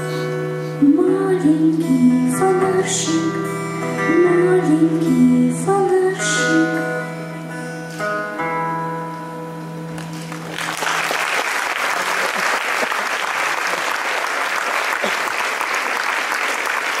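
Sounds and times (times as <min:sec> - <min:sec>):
guitar chord ringing: 0:01.8 - 0:10.6
audience applause: 0:10.0 - 0:17.0.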